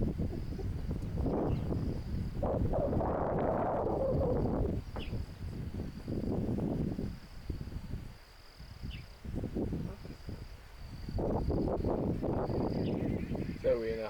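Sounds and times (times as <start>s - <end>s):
high-pitched insect drone: 0.1s - 13.8s.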